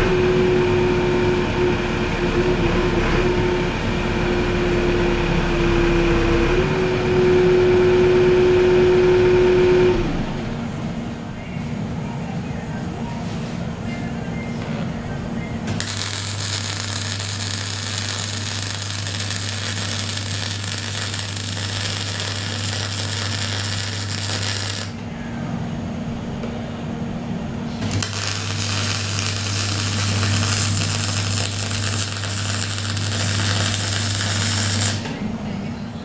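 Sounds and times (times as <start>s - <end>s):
welding set humming: 0.0s - 36.0s
arc welding crackle: 15.7s - 25.1s, 27.7s - 35.2s.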